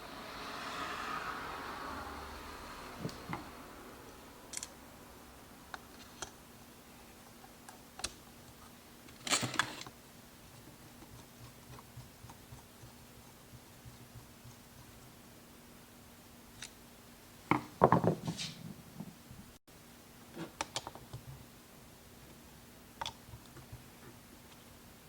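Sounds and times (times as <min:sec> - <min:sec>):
faint steady hum: 0:00.0 - 0:17.8.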